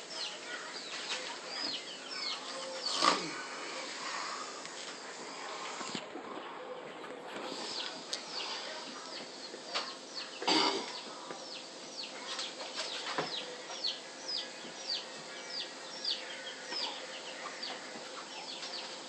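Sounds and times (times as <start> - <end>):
bird peeping: 6.3 - 19.0.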